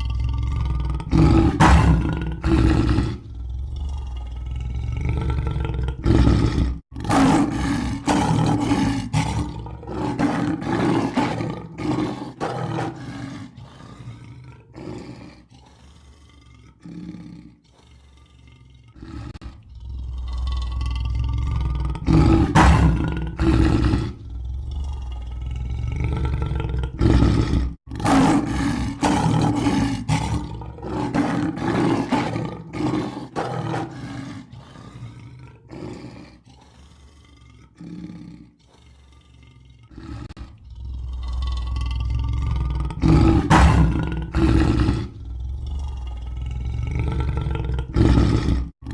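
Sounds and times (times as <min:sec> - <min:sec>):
lion roaring: 0:00.0 - 0:48.9.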